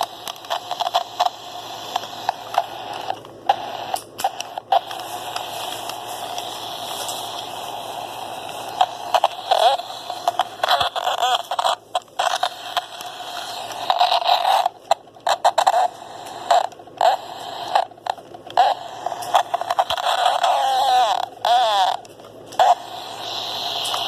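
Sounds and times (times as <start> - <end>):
walkie-talkie static: 0.0 - 24.0.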